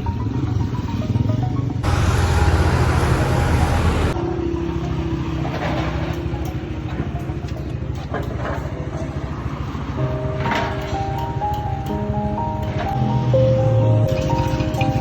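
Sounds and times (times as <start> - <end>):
loud rushing noise: 1.8 - 4.2
vehicle engine running: 1.8 - 5.2.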